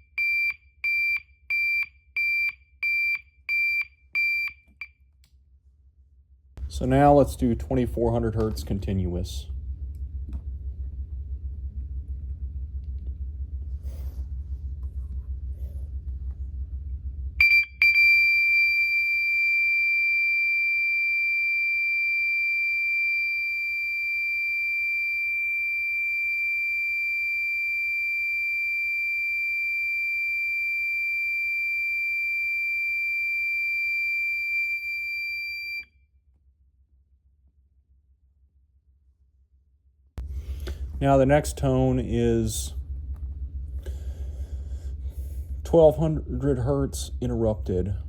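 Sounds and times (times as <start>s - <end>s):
low hum: 4.8s - 35.8s, 40.1s - 48.0s
high piercing alarm horn tone: 17.4s - 35.9s.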